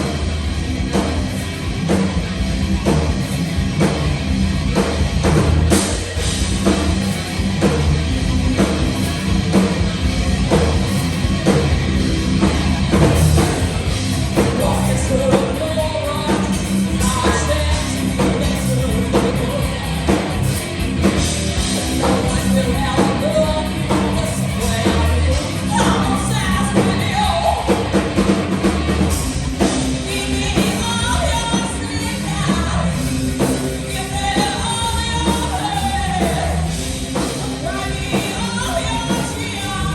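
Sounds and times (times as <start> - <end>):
heavy metal band playing: 0.0 - 39.9
person singing: 14.4 - 20.6, 22.0 - 28.0.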